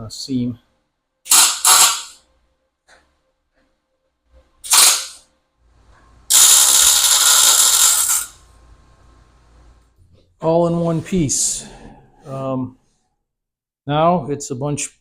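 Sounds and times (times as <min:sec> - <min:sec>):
arc welding: 0:01.3 - 0:02.2, 0:04.7 - 0:05.2, 0:06.3 - 0:08.4.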